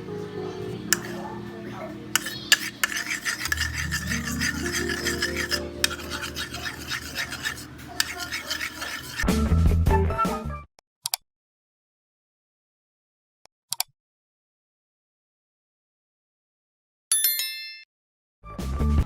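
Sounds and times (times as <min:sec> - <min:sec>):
rasping scrape of grating: 0:00.9 - 0:09.3.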